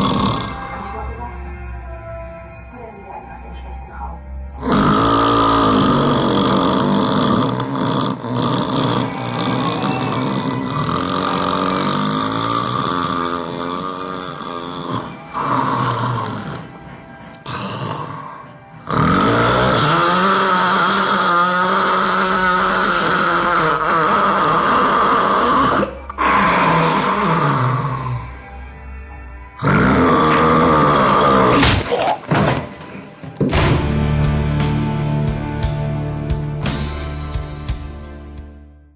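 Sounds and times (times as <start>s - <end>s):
person snoring loudly: 0.0s - 0.9s, 4.6s - 28.7s, 29.6s - 32.2s.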